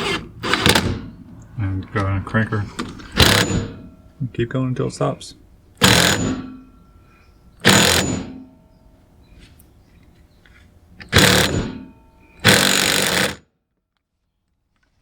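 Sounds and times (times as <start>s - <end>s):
impact wrench bursts: 0.0s - 1.3s, 2.6s - 4.0s, 5.8s - 6.8s, 7.6s - 8.5s, 11.0s - 13.5s.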